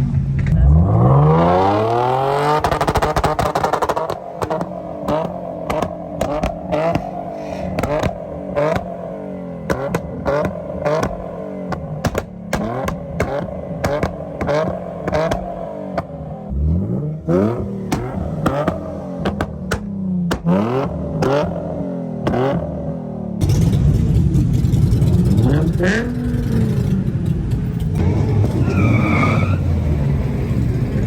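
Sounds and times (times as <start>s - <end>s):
car engine on launch limiter: 0.4s - 27.2s
exhaust pops and bangs: 2.6s - 9.0s, 9.6s - 16.2s, 17.8s - 21.6s.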